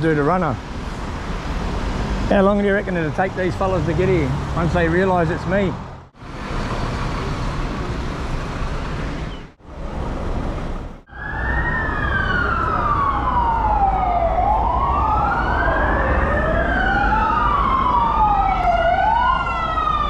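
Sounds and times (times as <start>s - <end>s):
street traffic noise: 0.0s - 20.0s
police sirens wailing: 11.1s - 20.0s.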